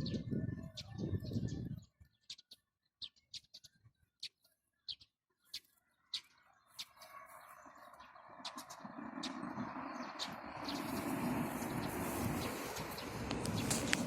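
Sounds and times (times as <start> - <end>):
small birds chirping: 0.0 - 14.0
wind: 0.0 - 14.0
distant traffic hum: 6.0 - 14.0.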